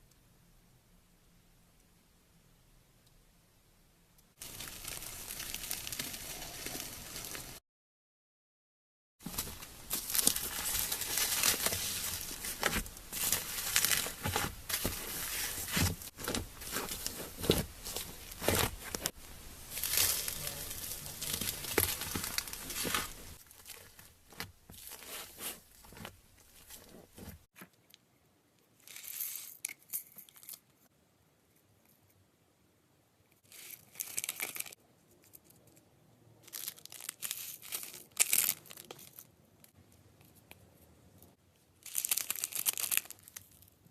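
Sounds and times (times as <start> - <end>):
slime crackling and squelching: 4.4 - 7.6, 9.2 - 27.5.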